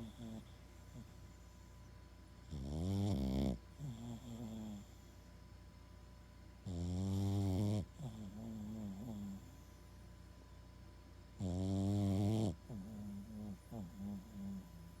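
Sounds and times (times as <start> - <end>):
dog snoring: 0.0 - 1.2, 2.4 - 5.1, 6.6 - 9.8, 11.4 - 15.0.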